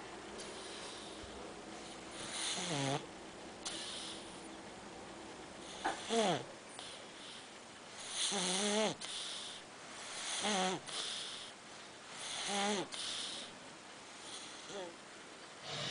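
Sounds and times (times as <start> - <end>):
dog snoring: 1.8 - 4.4, 5.6 - 7.4, 8.0 - 11.5, 12.1 - 13.5, 14.2 - 15.0, 15.6 - 15.9.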